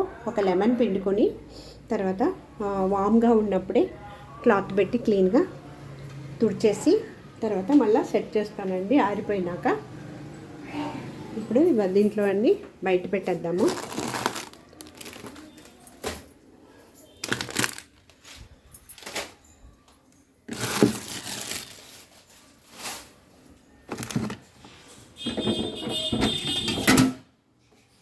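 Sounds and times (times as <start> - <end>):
plastic bags crinkling: 13.4 - 16.3, 17.0 - 19.6, 20.4 - 24.7.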